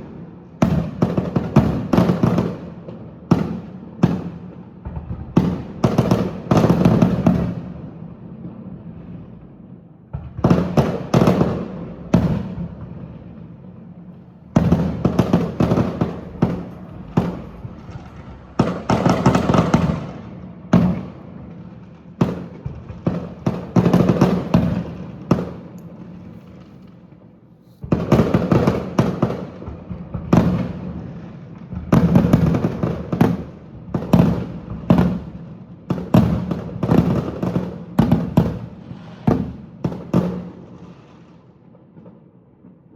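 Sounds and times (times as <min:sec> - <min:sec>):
echoing rumble: 0:11.6 - 0:21.5
firework shells bursting: 0:14.2 - 0:21.0, 0:22.3 - 0:28.8.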